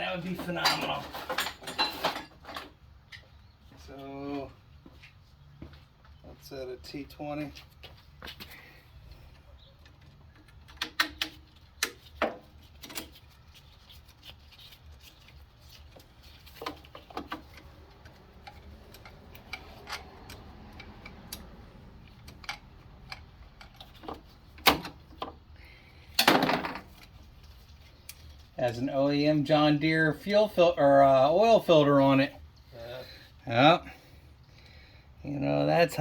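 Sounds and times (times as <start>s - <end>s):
tools clattering: 0.2s - 2.8s
hand tools clicking on metal: 17.6s - 24.0s.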